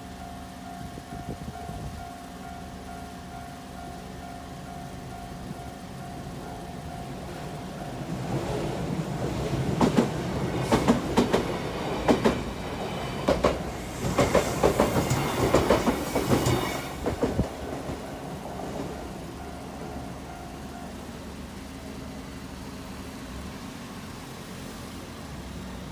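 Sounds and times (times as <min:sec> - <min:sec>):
train hiss: 0:00.6 - 0:25.9
train wheels clacking over rail joints: 0:08.1 - 0:19.2.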